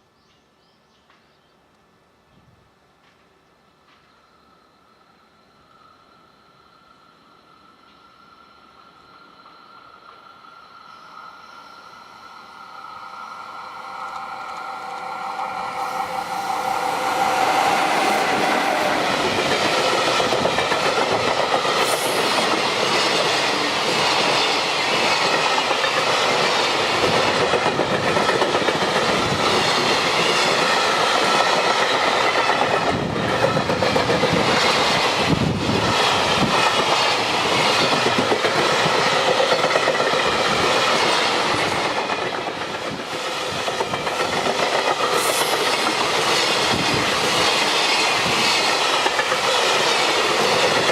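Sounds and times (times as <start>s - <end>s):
train wheels clattering on rails: 14.0s - 50.9s.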